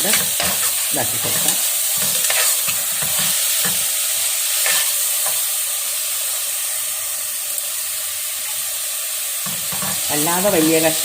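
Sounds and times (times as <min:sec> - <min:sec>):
spatula scraping a pan: 0:00.0 - 0:05.5, 0:09.4 - 0:10.1
onions sizzling in a pan: 0:00.0 - 0:11.0.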